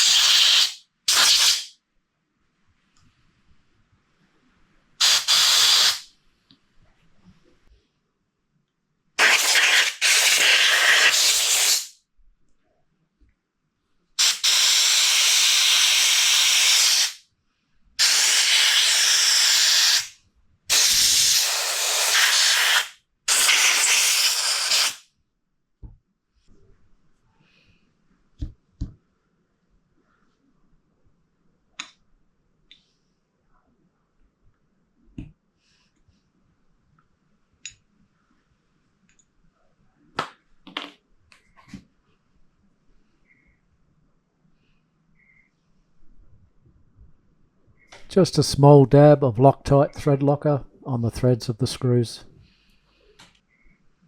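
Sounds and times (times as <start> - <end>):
compressed air hissing: 0.0 - 1.7, 5.0 - 6.1, 9.2 - 12.0, 14.2 - 17.2, 18.0 - 25.0.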